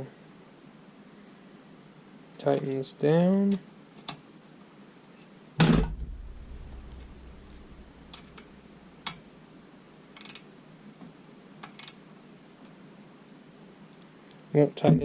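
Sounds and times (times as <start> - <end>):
sharp knock: 5.6 - 7.8.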